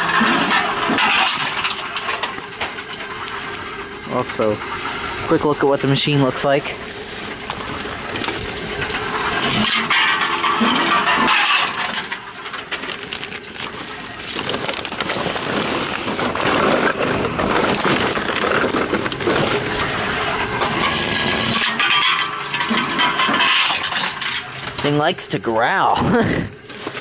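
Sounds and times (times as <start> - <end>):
aluminium cans clattering: 0.0 - 3.1, 7.4 - 24.9, 26.6 - 27.0
can crusher growling: 0.0 - 27.0.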